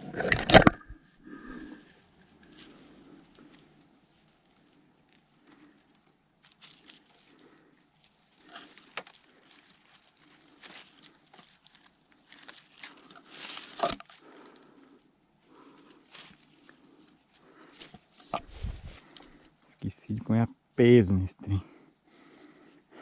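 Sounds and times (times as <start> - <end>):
rustling and handling noises: 6.4 - 14.3, 15.5 - 19.5.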